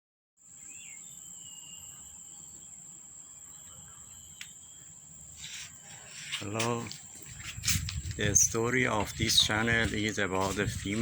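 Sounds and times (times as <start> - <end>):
faint chirps: 0.4 - 7.2
high-pitched insect drone: 0.4 - 11.0.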